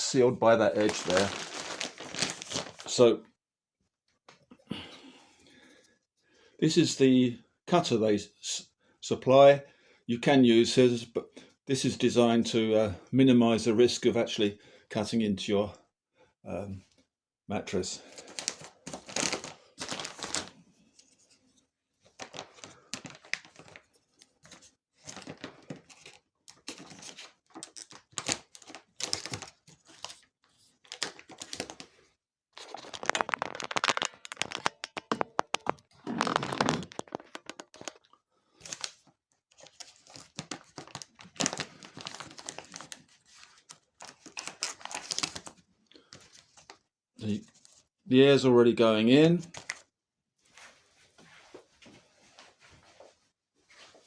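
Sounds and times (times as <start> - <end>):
plastic sheeting crinkling and tearing: 0.1 - 3.0, 18.2 - 20.5, 26.8 - 29.6, 32.6 - 38.0, 39.6 - 45.5.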